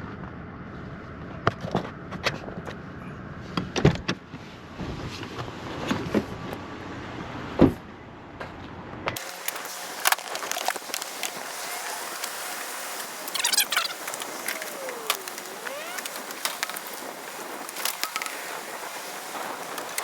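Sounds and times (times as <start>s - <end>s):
steady background hum: 8.2s - 20.0s.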